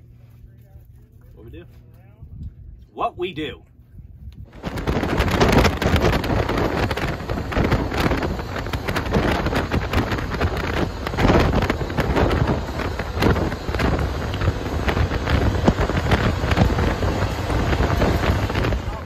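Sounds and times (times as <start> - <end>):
wind buffeting microphone: 2.1 - 2.9, 3.8 - 19.0
off-road vehicle engine running: 4.5 - 19.0.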